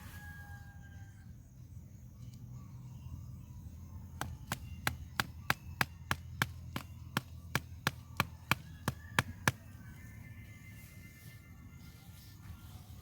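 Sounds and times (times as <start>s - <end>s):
rapid chopping strikes: 4.2s - 9.6s.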